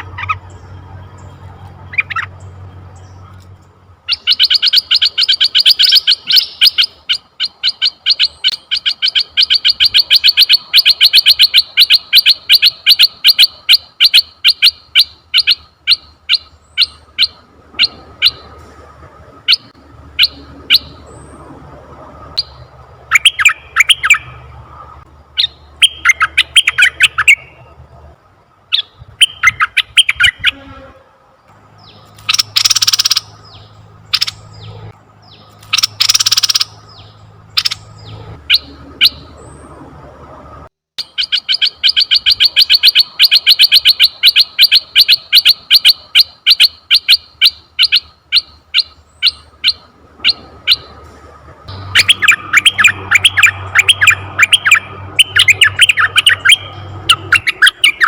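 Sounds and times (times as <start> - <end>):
bird chattering: 0.0 - 1.3, 1.9 - 3.4, 4.0 - 18.5, 22.4 - 24.4, 25.4 - 27.6, 28.7 - 30.6, 31.8 - 39.4, 41.0 - 51.0, 51.7 - 58.0
bird calling with sharp notes: 0.0 - 3.4, 4.0 - 18.6, 19.4 - 21.5, 22.3 - 24.5, 25.3 - 27.8, 28.7 - 31.0, 31.8 - 39.8, 41.0 - 51.0, 51.7 - 58.0
harsh noisy bird calls: 0.0 - 40.2, 41.0 - 58.0.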